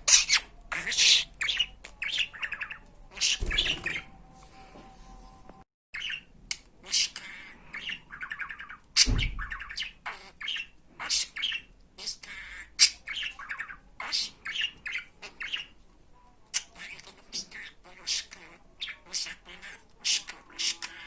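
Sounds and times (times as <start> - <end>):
budgerigar chirping and warbling: 0.0 - 4.1, 6.0 - 15.8, 16.6 - 21.0
thump: 9.0 - 9.5.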